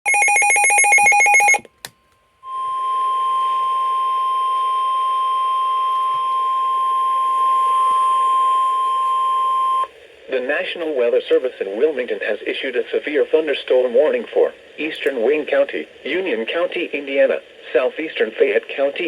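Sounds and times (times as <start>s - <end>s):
steady warning alarm tone: 0.1s - 1.7s
faint radio hiss: 1.7s - 19.0s.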